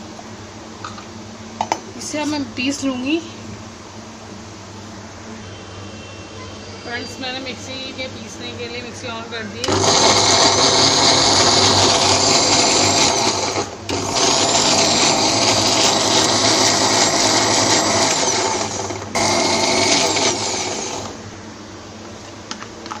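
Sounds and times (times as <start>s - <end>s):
mixer grinder whining: 6.9s - 21.3s.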